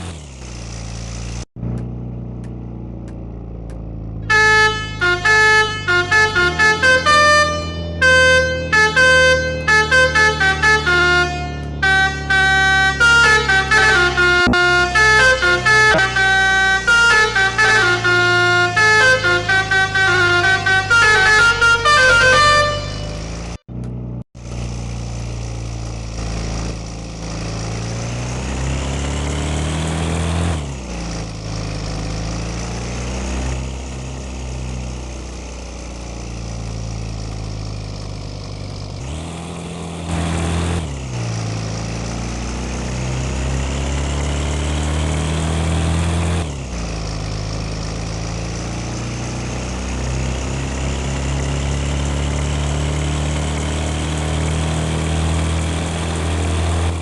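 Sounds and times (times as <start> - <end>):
diesel bus engine pulling away: 0.0 - 57.0
bus horn melody: 4.1 - 23.6.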